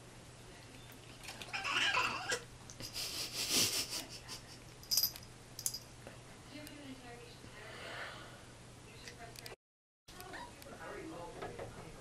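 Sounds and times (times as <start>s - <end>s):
young cat crying: 1.5s - 2.4s.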